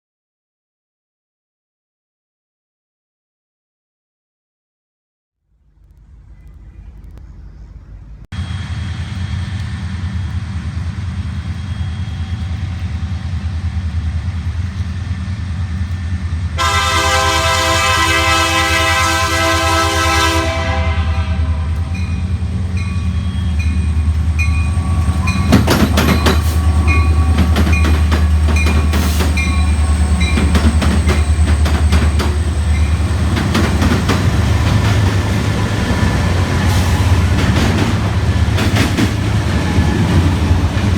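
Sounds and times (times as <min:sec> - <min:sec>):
locomotive engine rumble: 0:05.7 - 0:40.9
train wheels clattering on rails: 0:08.4 - 0:40.9
train air horn: 0:16.6 - 0:22.3.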